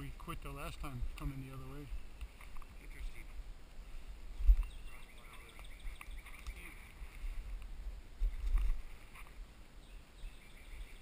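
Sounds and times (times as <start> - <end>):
wind rumble on microphone: 0.8 - 9.5
faint high chirping: 4.3 - 6.9, 9.8 - 11.0.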